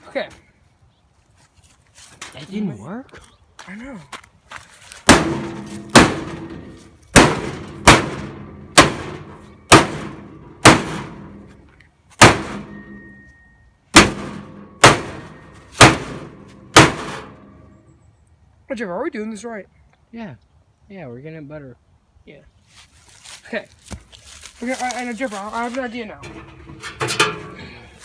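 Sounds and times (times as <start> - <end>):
hammer blows on metal: 5.1 - 11.6, 12.2 - 17.8.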